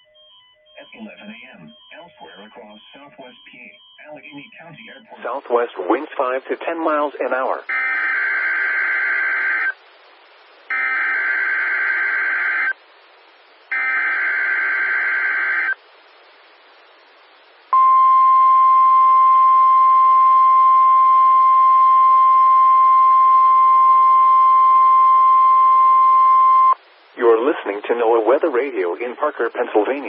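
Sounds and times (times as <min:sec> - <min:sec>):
steady warning alarm tone: 0:00.0 - 0:05.3, 0:07.7 - 0:09.7, 0:10.7 - 0:12.8, 0:13.7 - 0:15.8
faint radio hiss: 0:00.8 - 0:30.0.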